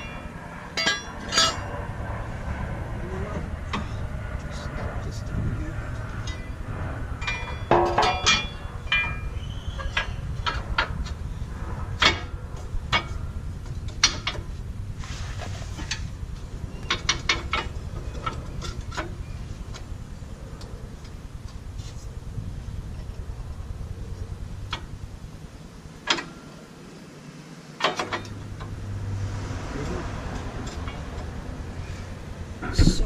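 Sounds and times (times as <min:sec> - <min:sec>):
metal parts and tools clinking: 0:00.8 - 0:01.6.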